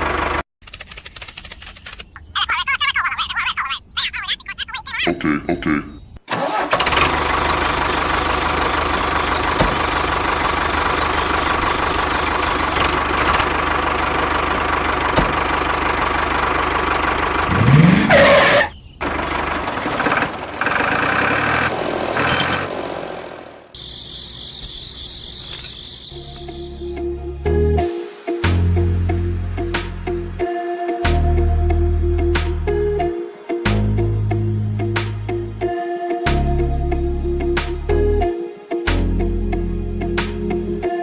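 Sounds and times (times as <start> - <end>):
small tractor engine running: 0.0 - 1.4, 6.3 - 17.8, 19.0 - 26.8.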